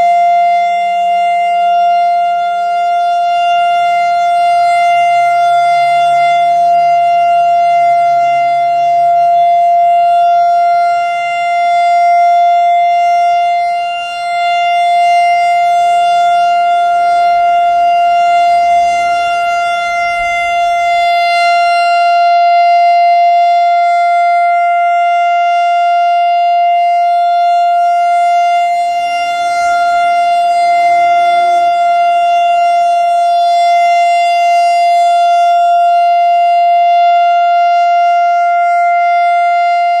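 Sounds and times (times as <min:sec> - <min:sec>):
warning siren steady high tone: 0:00.0 - 0:40.0.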